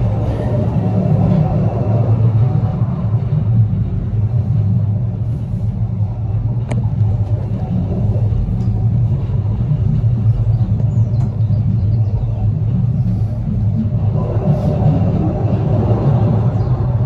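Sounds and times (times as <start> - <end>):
low rumble of road traffic: 0.0 - 17.0.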